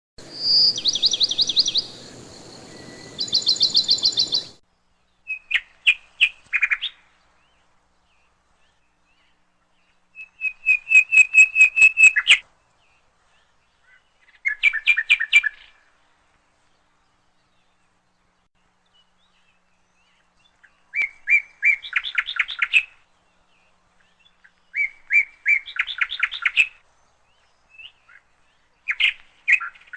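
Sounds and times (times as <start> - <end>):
songbird singing high notes: 0.2 - 4.6.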